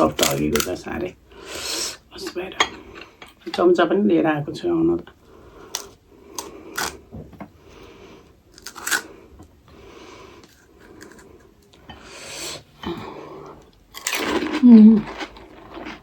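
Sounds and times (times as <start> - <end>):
crisp shells crackling: 8.5 - 9.1.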